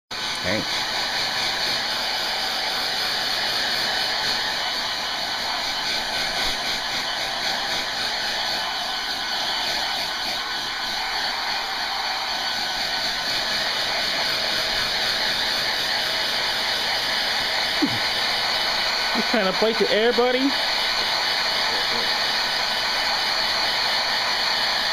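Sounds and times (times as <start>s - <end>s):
hair dryer running: 0.1s - 24.9s.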